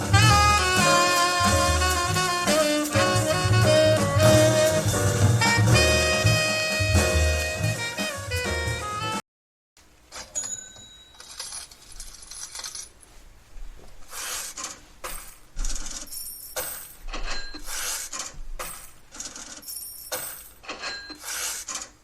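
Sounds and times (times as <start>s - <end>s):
metallic clinks and jingles: 10.3s - 13.0s.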